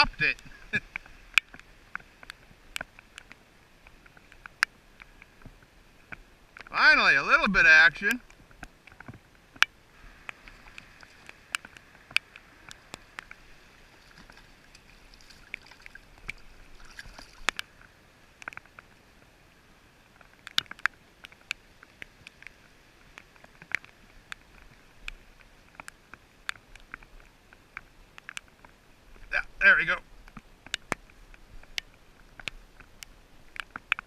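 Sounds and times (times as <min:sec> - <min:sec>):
sharp clicks and ticks: 0:00.0 - 0:13.4, 0:20.2 - 0:22.5, 0:23.1 - 0:34.0
water sloshing and lapping: 0:08.4 - 0:19.0.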